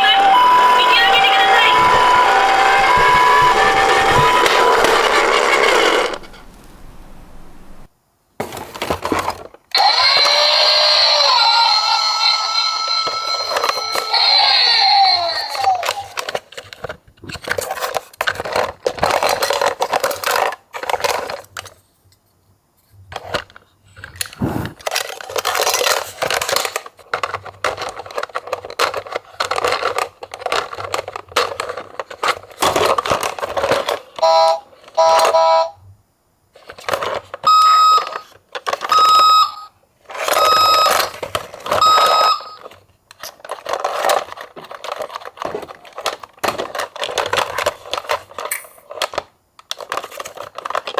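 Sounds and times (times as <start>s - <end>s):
electronic beeps: 0.0s - 4.4s
two-tone electronic siren: 0.0s - 7.9s
toy cars clattering: 1.1s - 6.6s, 13.0s - 21.8s, 24.2s - 34.2s, 40.1s - 50.9s.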